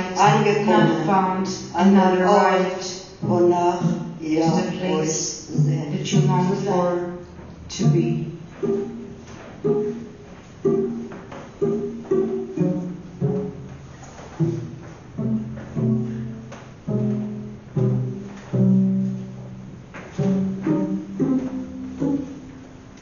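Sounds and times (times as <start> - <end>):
low plucked string notes: 7.6 - 23.0.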